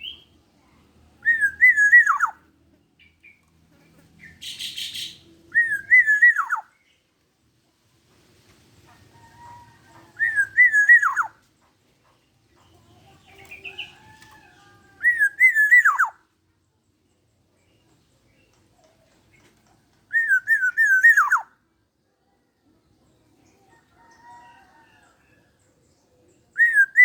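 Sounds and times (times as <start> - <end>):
oriole singing fluty whistles: 1.2 - 2.4, 4.5 - 6.6, 10.2 - 11.3, 15.0 - 16.2, 20.1 - 21.5, 26.6 - 27.0.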